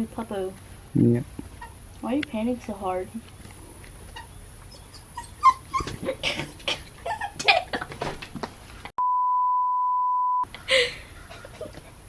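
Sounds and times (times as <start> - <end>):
censor bleep: 9.0 - 10.5.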